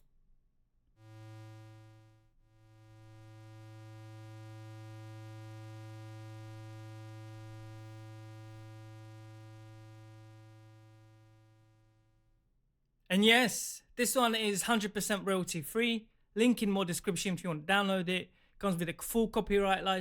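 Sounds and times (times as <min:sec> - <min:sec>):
long buzzing tone: 0:01.0 - 0:12.2.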